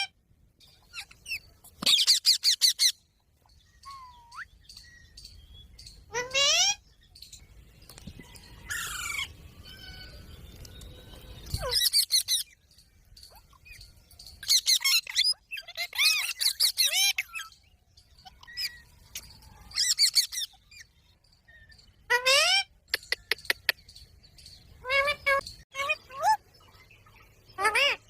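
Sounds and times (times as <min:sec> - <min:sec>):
parrot squawking: 0:06.1 - 0:06.8, 0:27.6 - 0:28.0.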